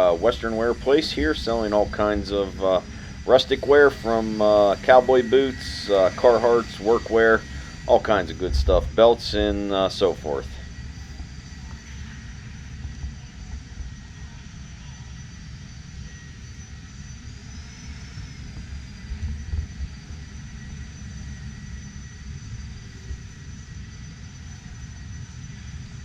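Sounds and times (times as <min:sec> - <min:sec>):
low rumble: 0:00.0 - 0:11.6.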